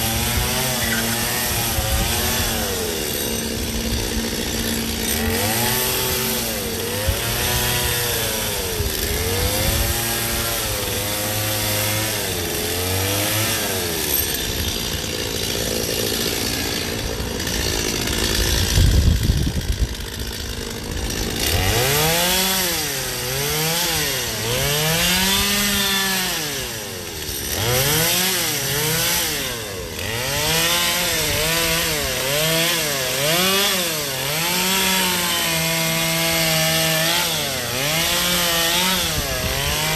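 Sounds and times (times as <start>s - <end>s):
chainsaw cutting ice: 0.0s - 39.9s.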